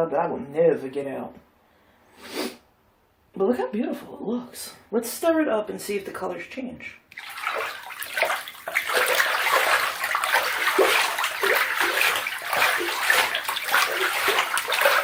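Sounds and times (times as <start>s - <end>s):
hands sloshing bathwater: 7.1s - 15.0s.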